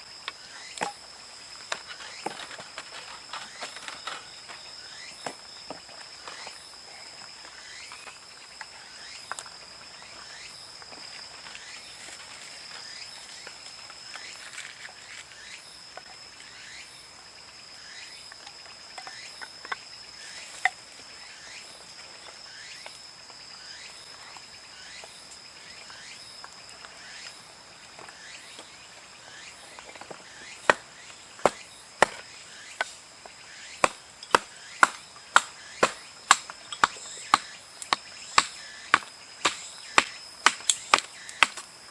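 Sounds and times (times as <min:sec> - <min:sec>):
crickets trilling: 0:00.0 - 0:41.9
sharp chopping knocks: 0:31.4 - 0:32.3, 0:33.8 - 0:41.7.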